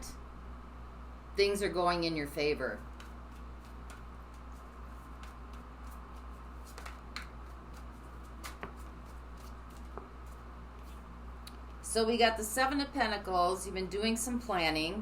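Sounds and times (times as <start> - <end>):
steady low hum: 0.0 - 15.0
cards clicking and tapping: 6.6 - 10.1.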